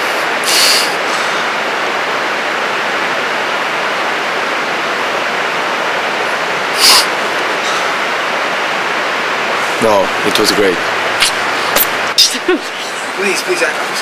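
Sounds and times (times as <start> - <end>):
sharp noise burst: 6.7 - 7.2.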